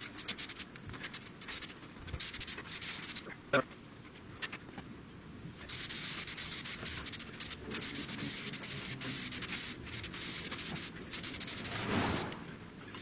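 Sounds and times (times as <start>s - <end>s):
aerosol can spraying: 0.0s - 3.2s, 5.7s - 12.3s.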